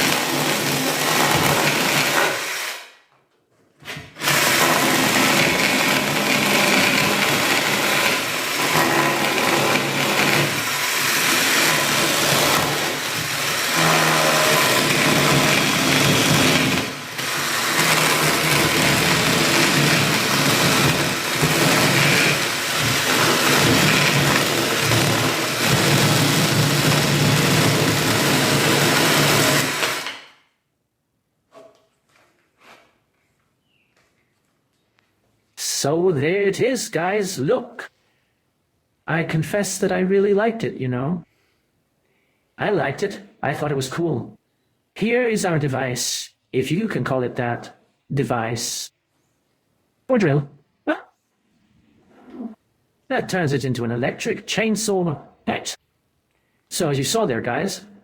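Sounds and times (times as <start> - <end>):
mini chainsaw cutting wood: 0.0 - 3.0, 4.1 - 30.4.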